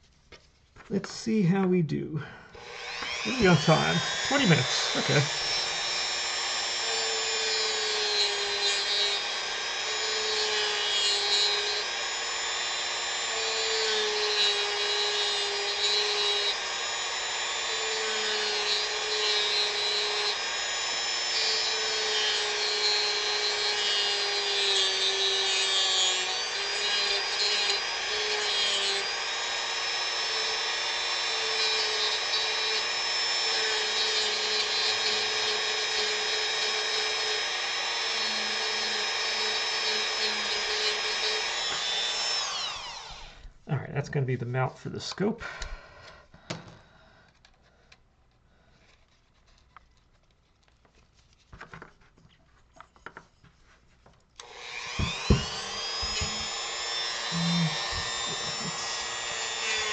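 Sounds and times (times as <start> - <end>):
rotary tool carving wood: 2.6 - 43.5, 54.4 - 59.9.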